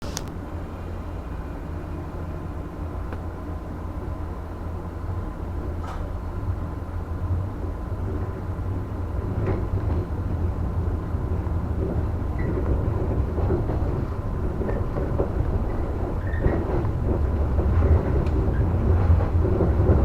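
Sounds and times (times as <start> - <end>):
electric train hum and rumble: 0.0 - 20.0
short light knocks: 5.8 - 6.2.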